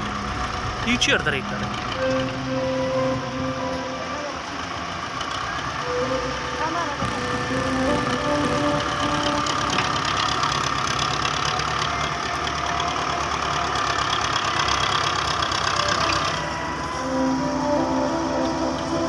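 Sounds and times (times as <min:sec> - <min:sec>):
high whine: 0:00.0 - 0:13.8, 0:15.8 - 0:19.0
diesel engine knocking: 0:00.0 - 0:17.0.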